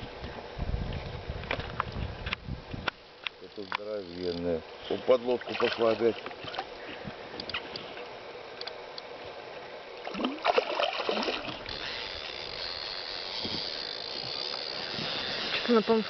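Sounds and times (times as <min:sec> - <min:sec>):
water splashing against boat: 0:04.9 - 0:08.0, 0:10.0 - 0:12.1
steady hiss: 0:11.5 - 0:16.0.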